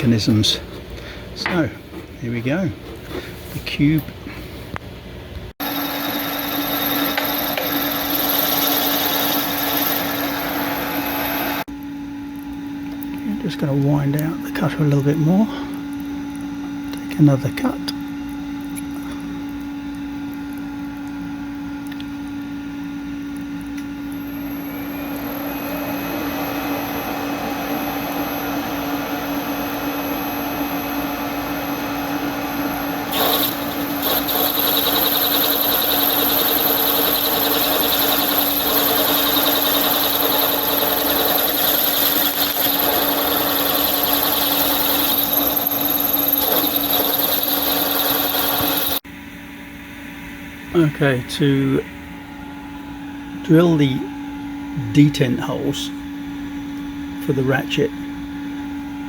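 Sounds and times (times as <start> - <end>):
machine tool cutting metal: 5.6 - 11.6, 33.1 - 49.0
high-pitched whine: 5.6 - 11.7, 23.8 - 49.0
motor humming: 5.6 - 49.0.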